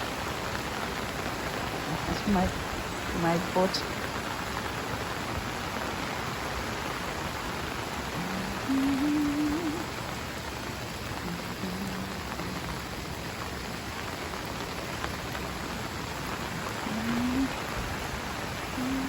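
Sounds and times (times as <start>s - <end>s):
heavy rain falling: 0.0s - 19.0s
low steady tone: 8.1s - 9.9s, 18.7s - 19.0s.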